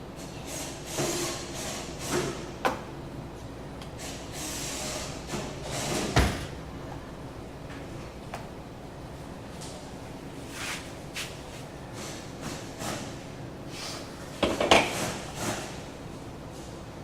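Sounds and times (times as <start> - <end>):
espresso machine hissing: 4.0 - 6.1.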